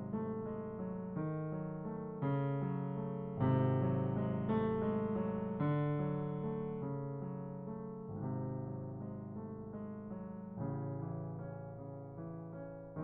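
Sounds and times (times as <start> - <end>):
piano chords: 0.0 - 13.0.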